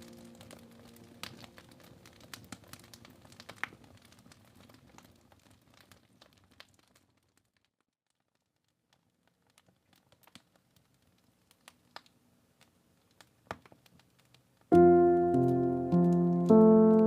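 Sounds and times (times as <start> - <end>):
piano chord: 0.0 - 1.9, 14.7 - 17.0
fireplace crackling: 0.0 - 7.5, 8.2 - 17.0.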